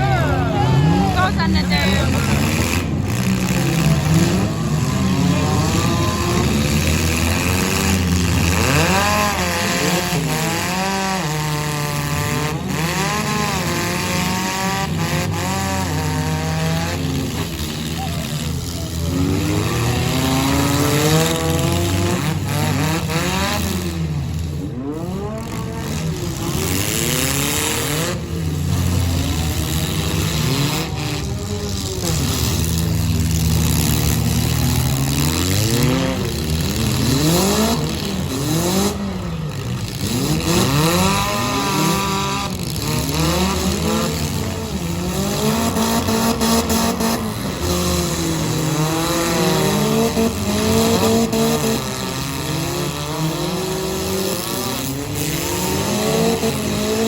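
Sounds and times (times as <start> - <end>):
car engines revving: 0.0 - 57.0.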